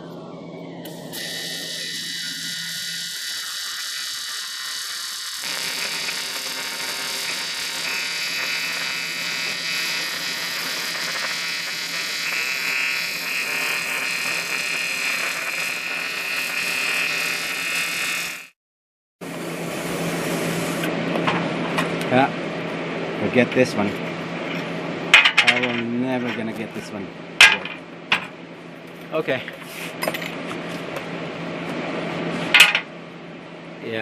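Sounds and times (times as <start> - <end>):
welding arc buzzing and crackling: 0.9 - 18.6, 19.3 - 20.9.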